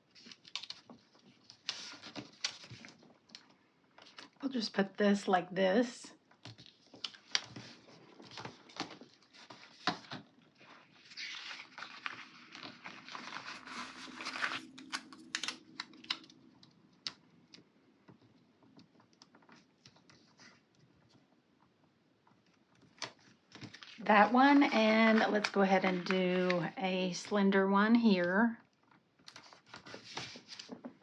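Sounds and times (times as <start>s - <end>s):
paper rustling: 0.0s - 3.2s, 6.4s - 16.4s, 22.8s - 26.8s, 29.3s - 31.0s.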